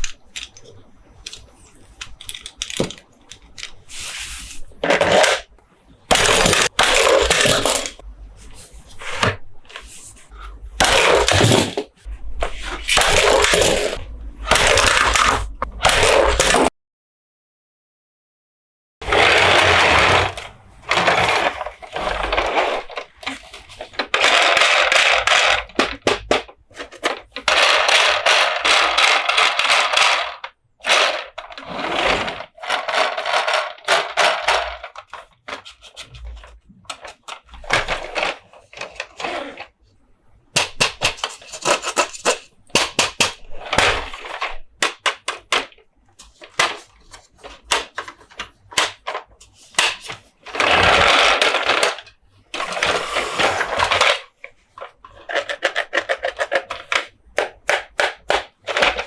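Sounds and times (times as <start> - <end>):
tapping on hard plastic toys: 0.0 - 3.8, 22.2 - 31.5, 40.5 - 52.9, 53.7 - 59.0
scratchy plastic rattling: 0.0 - 16.7, 19.0 - 39.8, 40.5 - 59.0.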